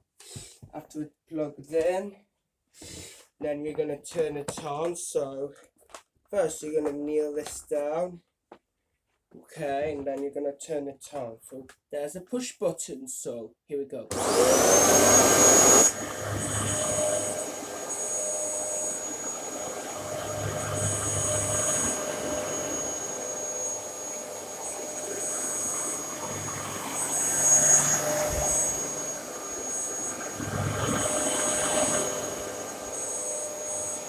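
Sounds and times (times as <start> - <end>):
vacuum cleaner running: 14.1 - 34.0.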